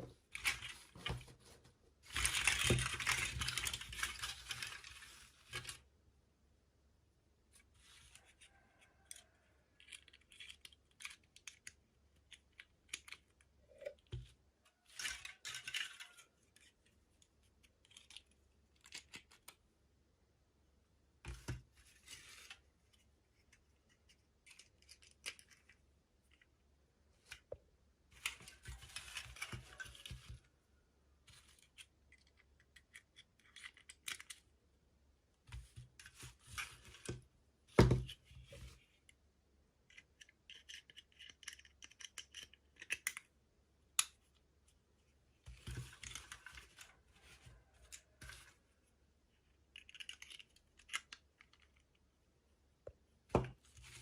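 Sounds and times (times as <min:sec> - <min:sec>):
toy packaging clicks and taps: 0:39.9 - 0:43.3, 0:49.8 - 0:52.0.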